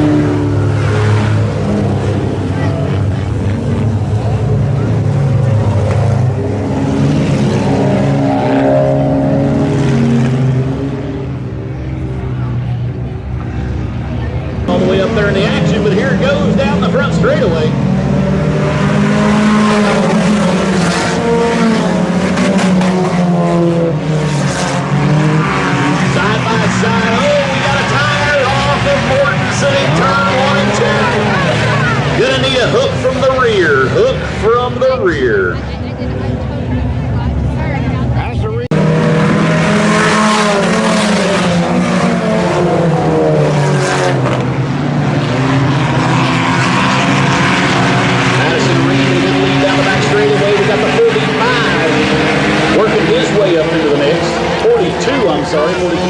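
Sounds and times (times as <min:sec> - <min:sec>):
race car engines revving: 0:00.0 - 0:56.0.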